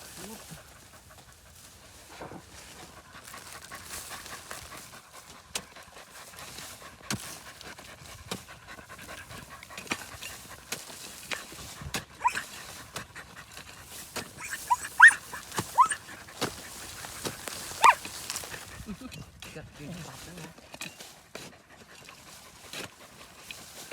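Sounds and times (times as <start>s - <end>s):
puppy panting: 0.2s - 19.0s, 21.1s - 23.9s
puppy whining: 12.2s - 12.6s, 14.2s - 16.2s, 17.7s - 18.1s.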